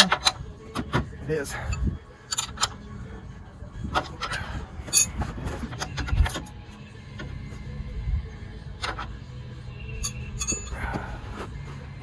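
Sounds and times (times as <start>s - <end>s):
metal tools clinking: 4.0s - 6.5s, 10.0s - 11.8s.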